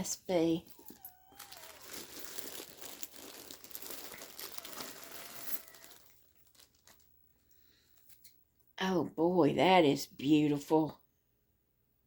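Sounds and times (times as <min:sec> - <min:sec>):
packaging bag crinkling: 0:00.4 - 0:07.4.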